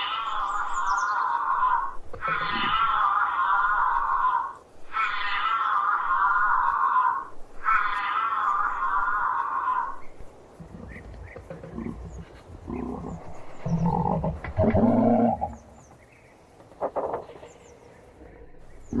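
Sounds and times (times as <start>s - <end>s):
large animal low rough calls: 10.6s - 15.7s.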